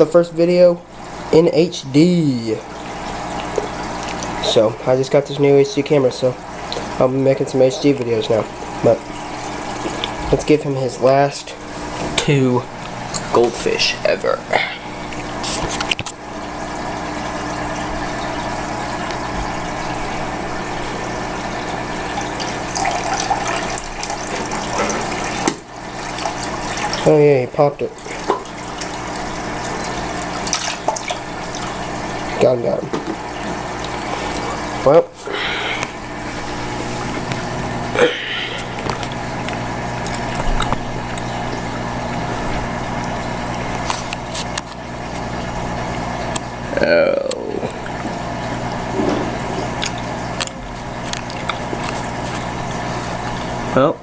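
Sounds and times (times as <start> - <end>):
aquarium filter pump running: 0.0 - 54.0
water splashing into tank: 2.6 - 4.9, 6.4 - 10.6, 14.9 - 27.2, 27.9 - 34.8, 35.7 - 46.7, 47.3 - 53.7.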